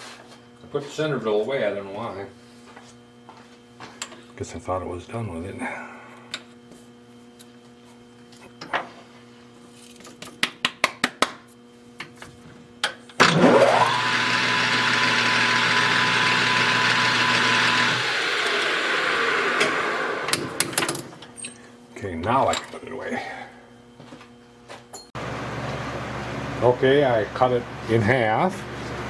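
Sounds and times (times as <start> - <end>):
lathe motor whining: 13.2 - 20.9.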